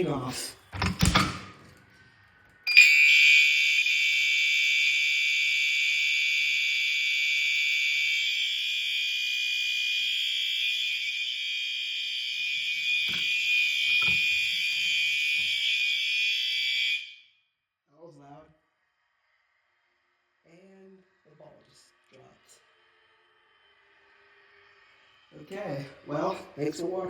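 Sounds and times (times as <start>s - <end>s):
fire alarm horns blaring: 2.7s - 17.4s.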